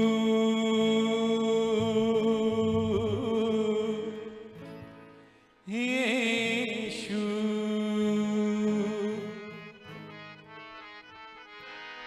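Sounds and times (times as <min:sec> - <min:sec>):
soft keyboard chords: 0:09.4 - 0:12.0.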